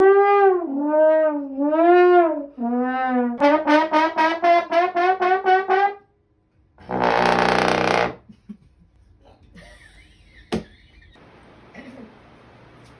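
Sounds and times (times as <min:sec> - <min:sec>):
comedic brass sound effect: 0:00.0 - 0:06.1, 0:06.8 - 0:08.3.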